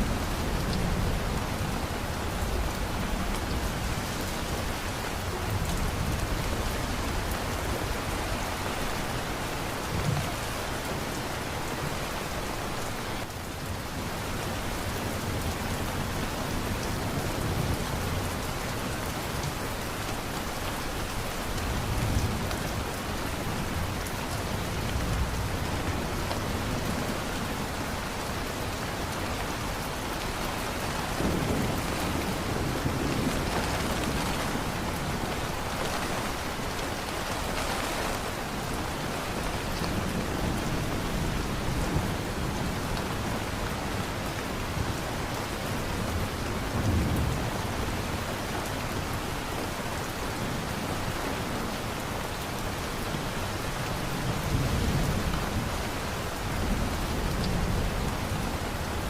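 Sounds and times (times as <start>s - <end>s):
heavy rain pattering: 0.0s - 59.0s
thunder rumbling: 31.0s - 38.4s.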